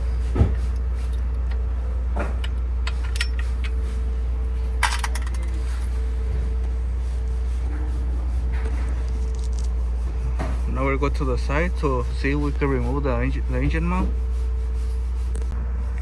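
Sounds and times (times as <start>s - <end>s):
steady low hum: 0.0s - 16.0s
metal tools clinking: 2.4s - 3.8s, 4.8s - 5.9s.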